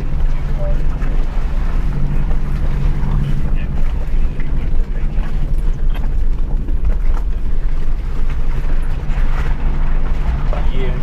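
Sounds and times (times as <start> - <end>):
car engine running at low speed: 0.0 - 11.0.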